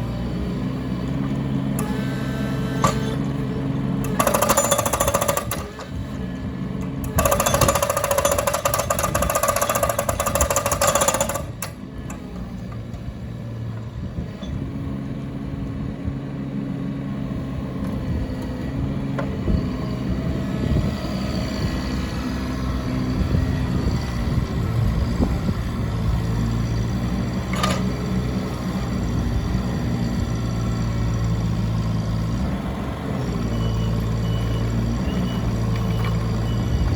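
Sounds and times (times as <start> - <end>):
diesel engine running: 0.0 - 36.9
loud rapid hammering rattle: 4.1 - 5.8, 7.2 - 11.7.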